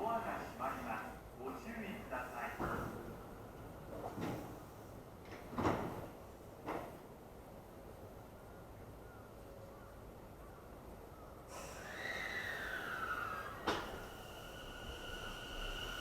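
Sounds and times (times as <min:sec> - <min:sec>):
electric train whine: 0:11.5 - 0:16.0.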